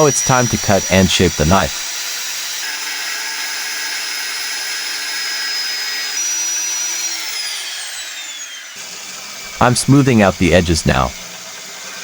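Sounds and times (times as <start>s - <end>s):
power tool cutting steel: 0.0s - 12.0s.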